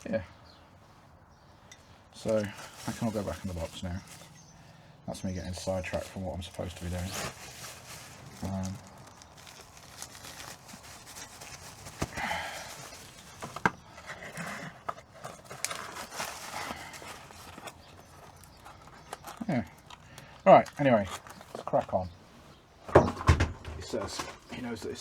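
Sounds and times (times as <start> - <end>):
packaging rustling: 2.2 - 4.4, 5.5 - 21.7.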